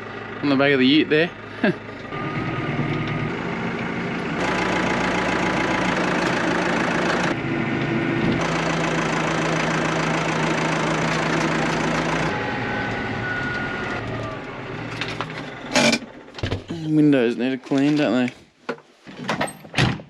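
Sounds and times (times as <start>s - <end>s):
vehicle engine running: 0.0s - 17.3s
road noise: 0.0s - 18.2s.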